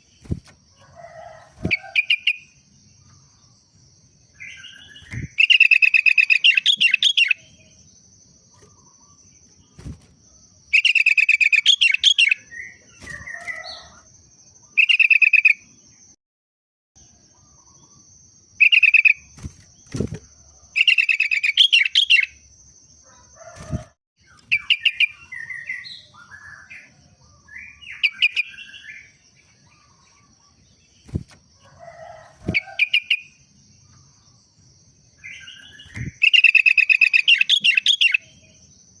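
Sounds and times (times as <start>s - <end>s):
bird chattering song: 4.4s - 7.8s, 10.8s - 14.0s, 14.7s - 15.7s, 18.6s - 20.2s, 20.8s - 22.4s, 24.2s - 31.2s, 35.2s - 38.6s.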